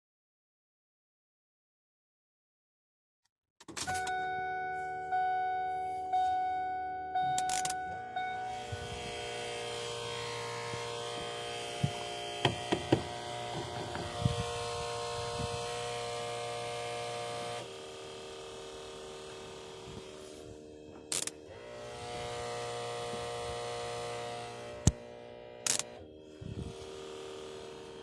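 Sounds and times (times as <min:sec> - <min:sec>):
electrical hum: 0:03.9 - 0:28.0
sharp clicks and knocks: 0:11.8 - 0:14.2.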